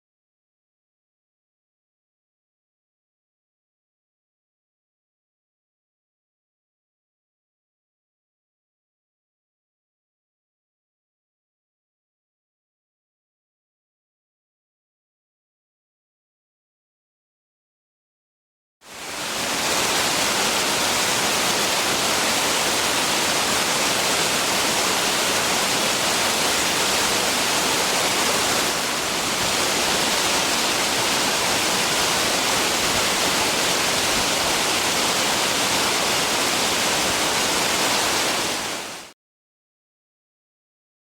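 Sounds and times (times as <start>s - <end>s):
waterfall pouring: 18.9s - 39.1s.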